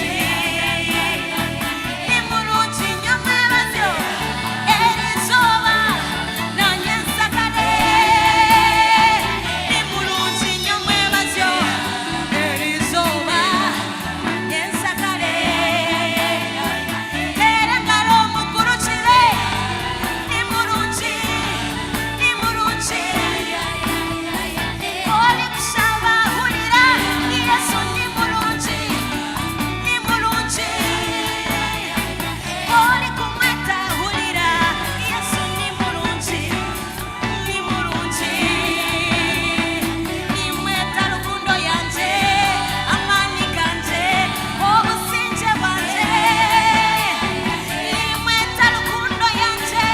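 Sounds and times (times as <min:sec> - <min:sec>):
bass: 0:00.0 - 0:49.9
drums: 0:00.0 - 0:49.9
people singing with vibrato: 0:00.0 - 0:49.9.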